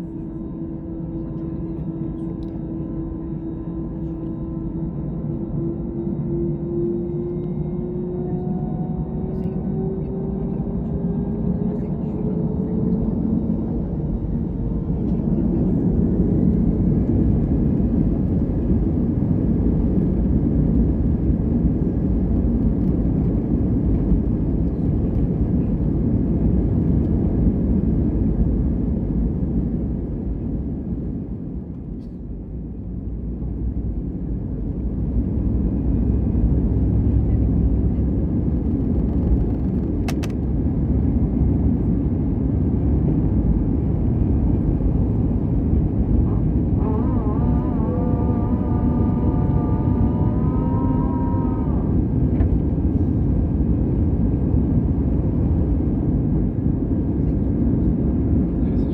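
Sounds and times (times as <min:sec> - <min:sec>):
jet engines rumbling in cabin: 0:00.0 - 0:58.9.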